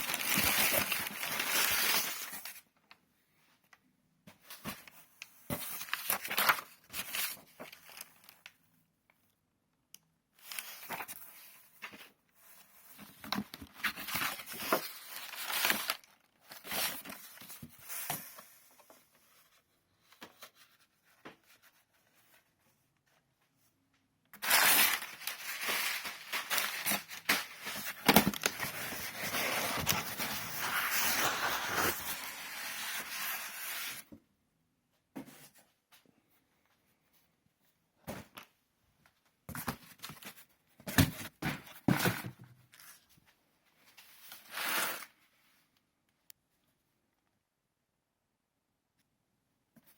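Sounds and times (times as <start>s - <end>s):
packaging rustling: 0.0s - 2.6s, 24.4s - 34.0s.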